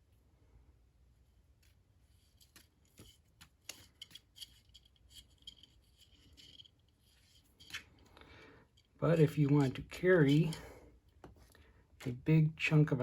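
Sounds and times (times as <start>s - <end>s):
soft scraping rub: 1.2s - 11.6s.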